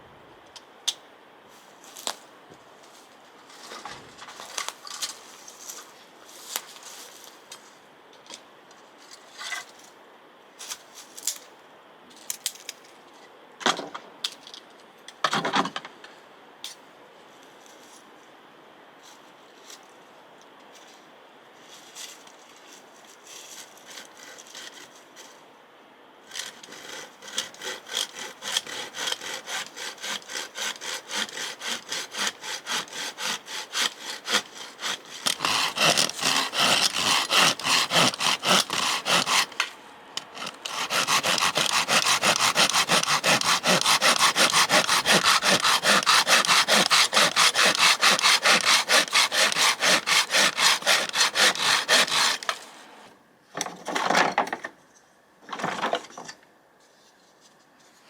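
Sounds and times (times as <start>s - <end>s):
hand saw cutting wood: 23.6s - 25.0s, 26.3s - 52.8s.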